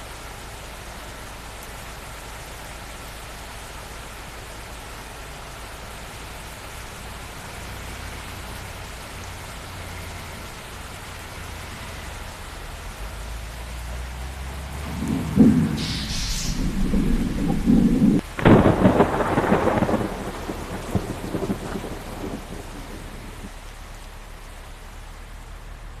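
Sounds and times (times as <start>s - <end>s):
steady rain falling: 0.0s - 26.0s
low rumble: 14.7s - 23.5s.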